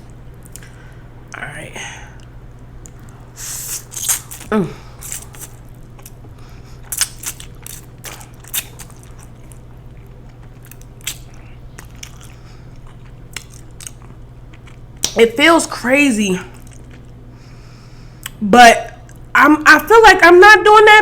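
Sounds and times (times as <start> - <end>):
person chewing food: 0.0 - 0.8, 2.2 - 15.2, 16.5 - 17.2.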